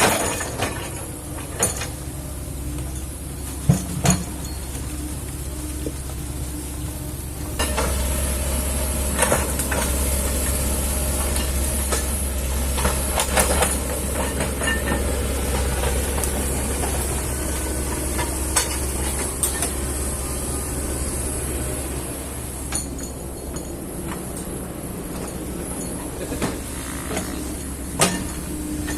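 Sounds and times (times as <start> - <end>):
excavator diesel engine running: 0.0 - 28.9
knocks from working machine: 7.6 - 8.2, 26.3 - 28.9.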